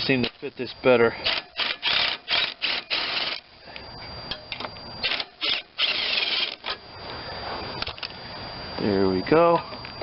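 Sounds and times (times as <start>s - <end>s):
ratchet wrench turning a bolt: 1.2s - 3.4s, 5.0s - 6.8s.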